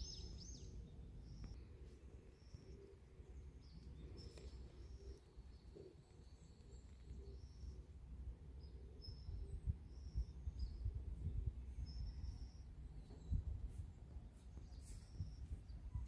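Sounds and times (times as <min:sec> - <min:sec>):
faint bird chirps: 0:00.0 - 0:07.9, 0:08.5 - 0:16.0
low rumble on microphone: 0:08.2 - 0:16.0.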